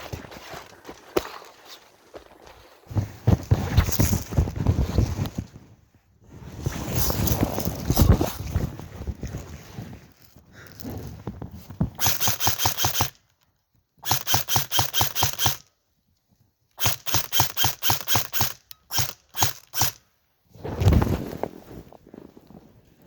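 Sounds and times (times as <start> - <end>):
airsoft rifle firing: 12.0 - 13.2, 14.0 - 15.7, 16.8 - 20.0.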